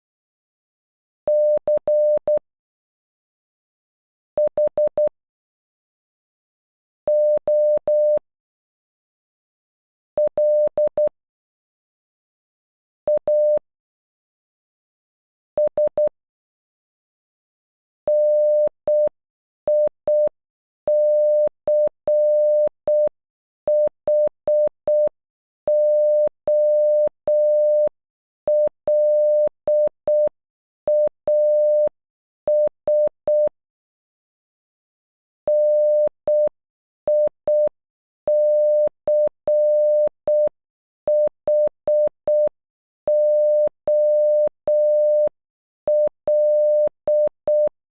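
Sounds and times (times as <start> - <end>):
morse code beeps: 10.4 - 11.1, 13.2 - 13.6, 20.9 - 23.1, 25.7 - 27.9, 28.5 - 30.3, 30.9 - 31.9, 32.5 - 33.5, 35.5 - 36.5, 37.1 - 37.7, 38.3 - 40.5, 41.1 - 42.5, 43.1 - 45.3, 45.9 - 47.7.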